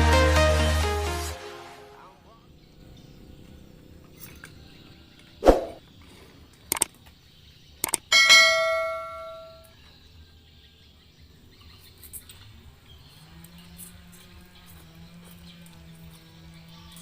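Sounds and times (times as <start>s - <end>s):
struck dish ringing: 8.1s - 9.7s.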